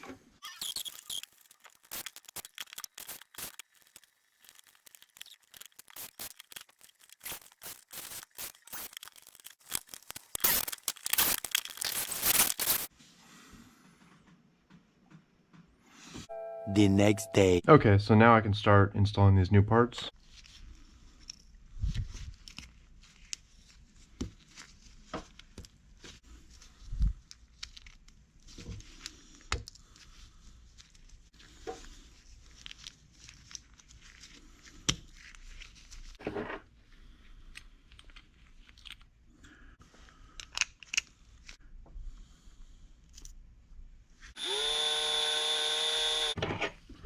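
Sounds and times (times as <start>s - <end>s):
clicks and rustles of parts handled: 0.6s - 12.9s, 20.4s - 39.2s, 39.9s - 41.6s
cordless power screwdriver spinning: 0.6s - 12.9s, 44.4s - 46.4s.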